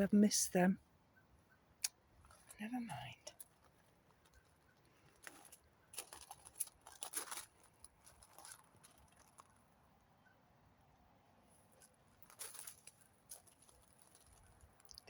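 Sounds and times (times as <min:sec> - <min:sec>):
footsteps on a garden path: 0:03.3 - 0:09.6, 0:11.7 - 0:15.0.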